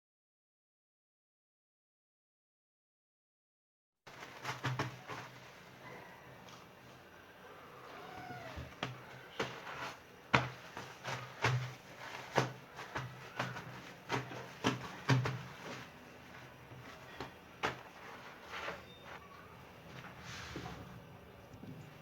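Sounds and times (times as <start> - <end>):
kitchen items knocking and clicking: 10.4 - 15.9.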